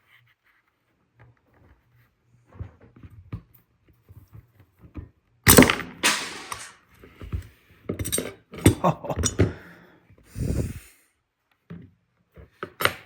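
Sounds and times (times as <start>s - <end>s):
loud clatter: 5.5s - 6.7s
loud spring snap: 5.5s - 6.8s.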